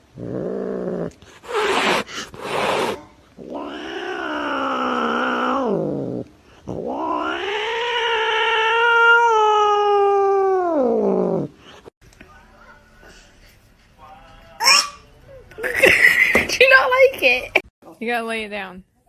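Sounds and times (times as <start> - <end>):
cat yowling: 2.8 - 5.8, 6.8 - 11.3.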